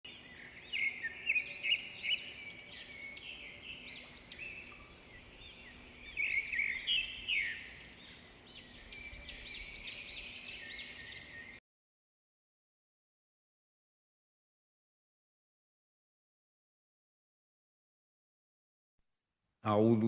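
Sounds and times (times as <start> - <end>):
small birds chirping and twittering: 0.1 - 11.6.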